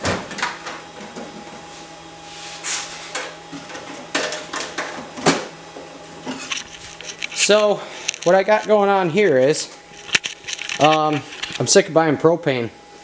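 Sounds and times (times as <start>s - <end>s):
steady low hum: 0.0s - 13.0s
parts clattering: 3.1s - 9.0s, 9.9s - 11.7s.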